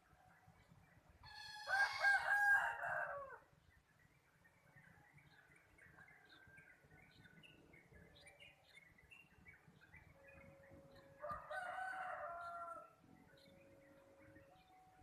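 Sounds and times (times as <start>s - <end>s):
small birds chirping: 0.0s - 15.0s
rooster crowing: 1.2s - 3.4s, 11.2s - 13.0s.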